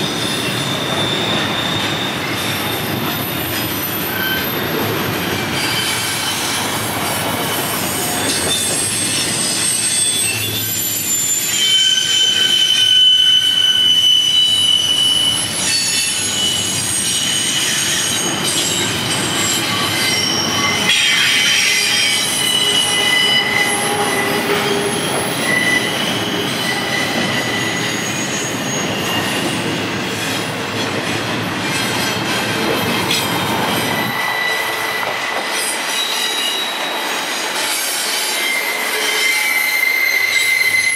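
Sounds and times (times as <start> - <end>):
freight train rolling past: 0.0 - 40.9
wheel flanges squealing: 0.1 - 6.7, 7.3 - 29.8, 38.2 - 40.9
clickety-clack over rail joints: 29.2 - 38.3.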